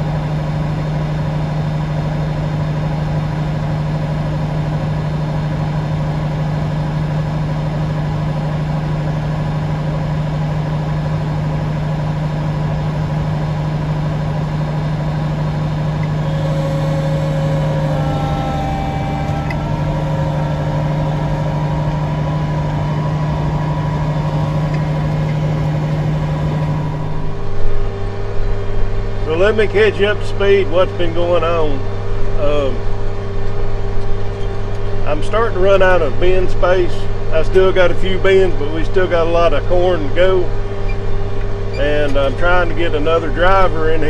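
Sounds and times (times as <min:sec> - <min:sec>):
large engine humming: 0:00.0 - 0:28.0
faint higher tones: 0:13.8 - 0:27.4.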